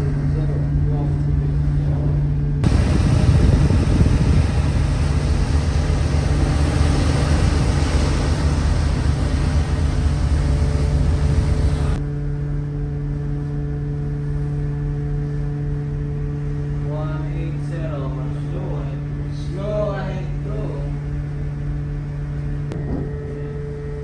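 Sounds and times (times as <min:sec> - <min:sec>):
ship machinery drone: 0:00.0 - 0:24.0
wind buffeting microphone: 0:02.6 - 0:12.0.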